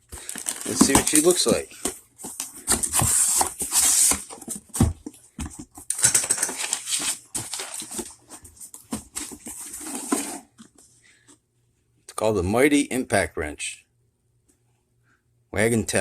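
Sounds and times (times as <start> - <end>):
packaging rustling and scraping: 0.0 - 10.9.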